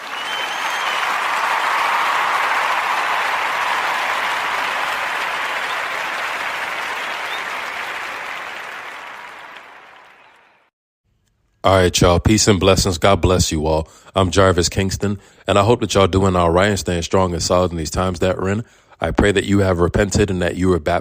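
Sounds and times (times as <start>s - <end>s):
crowd applauding: 0.0s - 10.7s.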